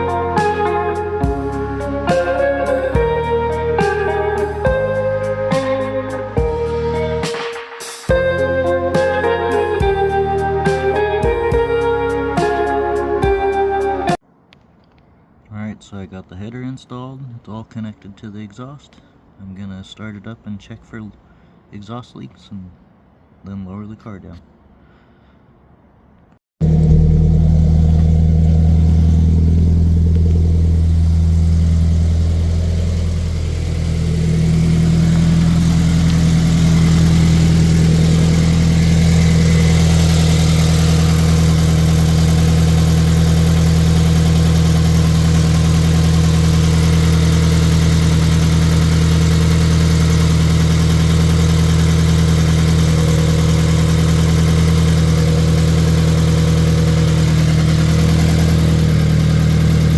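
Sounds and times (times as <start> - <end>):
car engine idling: 26.6 - 59.9.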